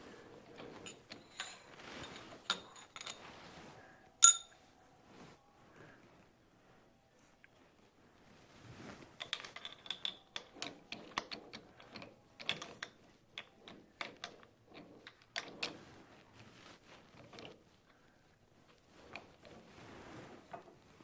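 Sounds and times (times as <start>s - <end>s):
metal parts clicking and clinking: 0.6s - 3.2s, 4.2s - 4.5s, 9.2s - 14.4s.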